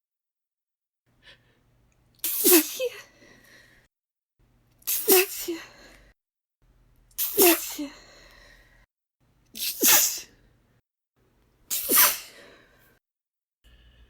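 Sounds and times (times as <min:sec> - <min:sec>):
woman sneezing: 0:02.2 - 0:03.1, 0:04.9 - 0:05.7, 0:07.2 - 0:08.0, 0:09.6 - 0:10.3, 0:11.7 - 0:12.5.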